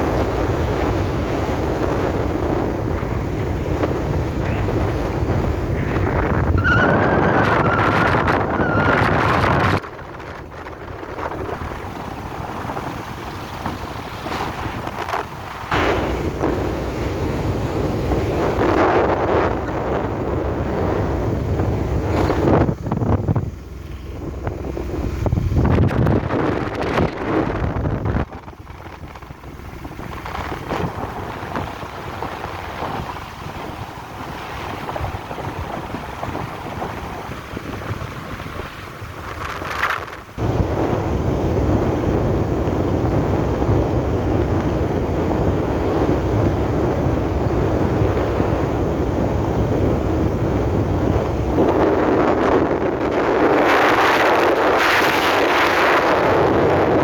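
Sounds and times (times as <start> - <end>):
moving vehicle rumble: 0.0 - 57.0
wind buffeting microphone: 0.0 - 57.0.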